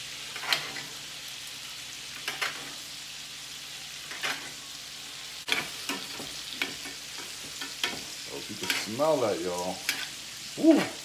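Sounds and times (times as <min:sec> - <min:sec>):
steaks sizzling in butter: 0:00.0 - 0:11.0.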